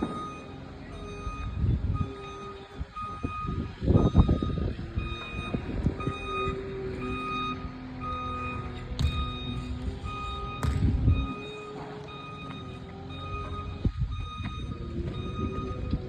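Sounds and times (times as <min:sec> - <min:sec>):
engine rumble: 0:00.0 - 0:16.0
reversing alarm beeping: 0:00.0 - 0:16.0
heavy low clunks: 0:08.8 - 0:09.6.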